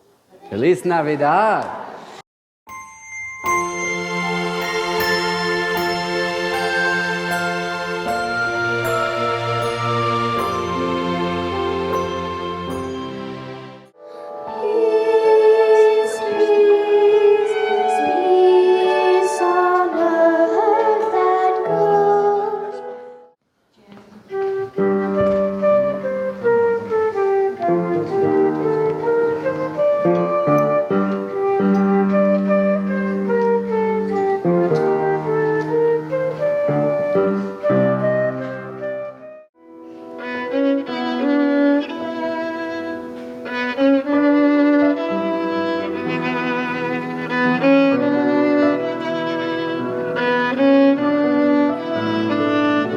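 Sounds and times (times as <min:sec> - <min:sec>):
violin sustained notes: 0:02.7 - 0:21.8, 0:40.2 - 0:52.9
instrumental music: 0:02.7 - 0:23.4, 0:24.1 - 0:52.9.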